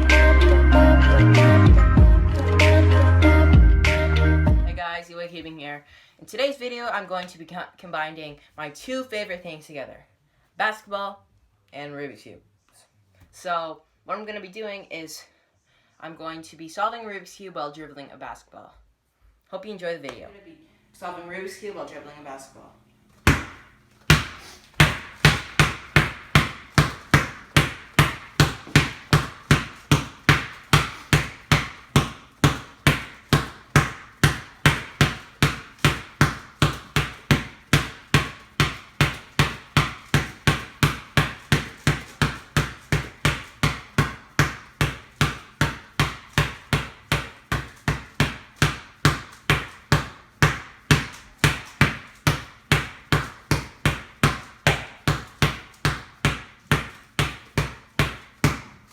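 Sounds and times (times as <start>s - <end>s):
basketball bouncing on hard floor: 23.2s - 58.8s.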